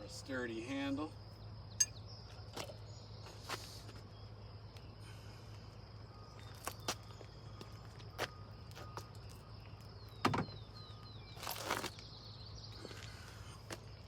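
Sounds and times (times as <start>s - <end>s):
steady high-pitched whine: 0.0s - 14.0s.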